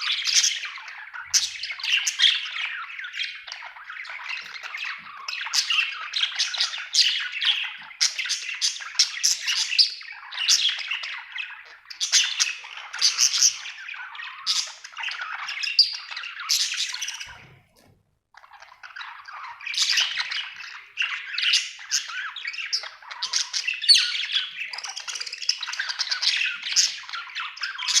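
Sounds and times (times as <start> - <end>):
budgerigar chattering and chirping: 18.4 - 28.0.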